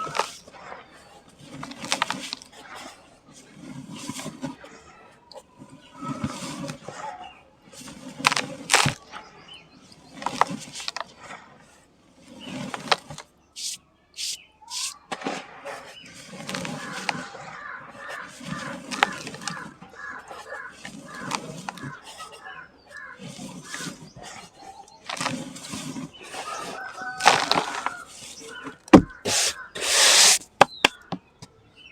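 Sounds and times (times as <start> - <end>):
sand-cement chunks crumbling: 25.0 - 30.8.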